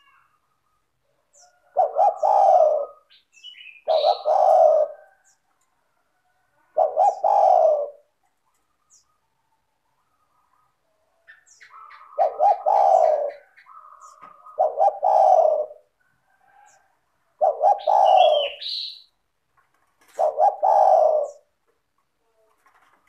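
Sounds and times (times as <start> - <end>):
small birds chirping: 0.0 - 5.8, 6.8 - 15.9, 16.5 - 23.0
dove cooing: 1.3 - 5.4, 6.4 - 9.2, 10.0 - 19.1, 20.0 - 21.6.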